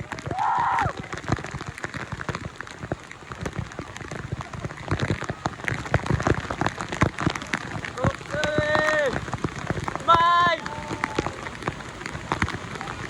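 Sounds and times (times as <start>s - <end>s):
water drops pattering: 0.0s - 13.0s.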